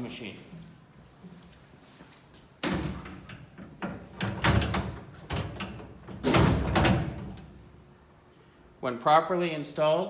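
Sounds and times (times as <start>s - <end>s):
metal door clunking and scraping: 2.6s - 7.6s.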